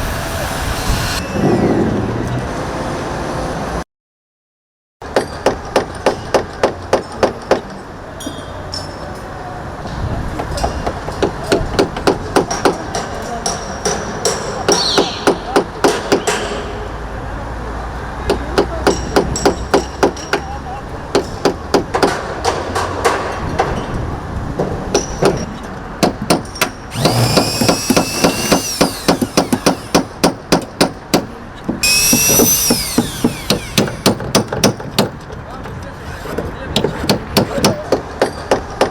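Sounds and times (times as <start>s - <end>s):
hammer blows: 26.0s - 35.2s
power tool whining: 26.9s - 30.5s, 31.8s - 34.4s.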